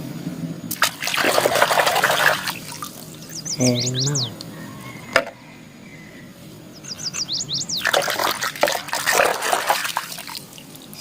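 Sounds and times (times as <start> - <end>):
water splashing and sloshing: 0.7 - 3.5, 7.7 - 11.0.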